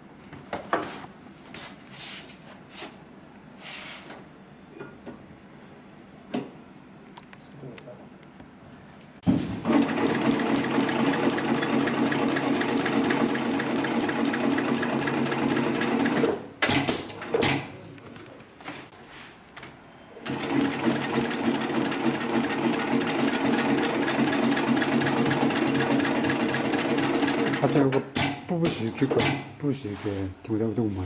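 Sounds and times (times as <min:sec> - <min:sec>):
sewing machine stitching: 0:09.6 - 0:17.6, 0:20.2 - 0:29.4.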